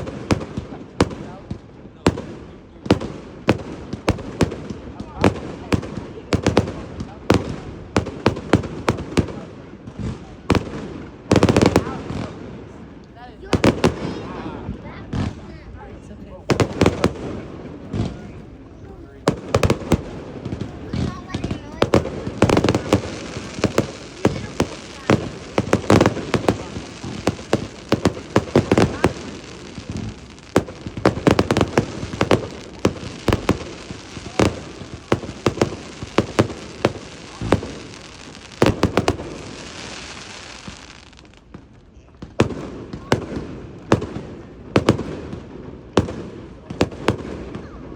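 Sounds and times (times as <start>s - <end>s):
fireworks bangs and crackling: 0.0s - 47.9s
fireworks hissing: 15.0s - 41.7s.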